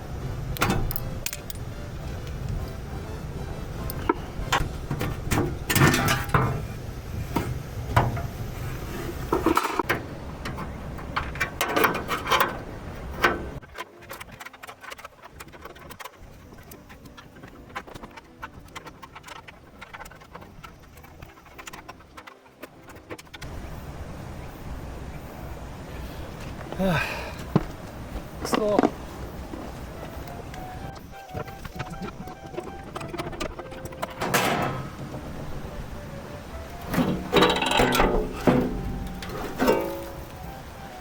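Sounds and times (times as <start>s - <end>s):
tools and parts clattering: 0.6s - 1.7s, 3.9s - 6.7s, 9.1s - 16.2s, 31.4s - 35.7s, 36.4s - 40.7s.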